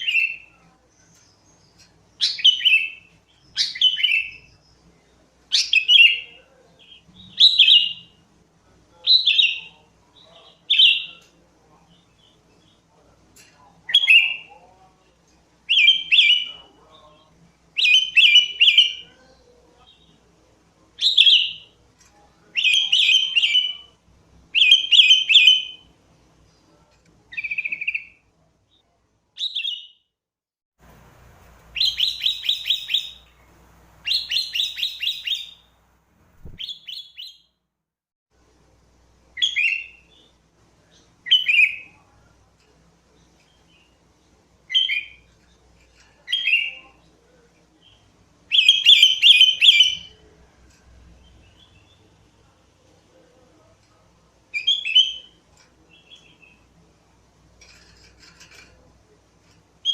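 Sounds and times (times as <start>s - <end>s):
bulbul singing trills: 31.7s - 35.7s.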